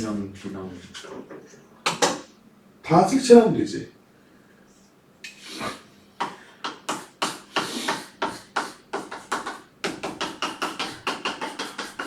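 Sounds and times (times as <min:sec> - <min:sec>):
pencil scratching strokes: 0:07.6 - 0:12.0.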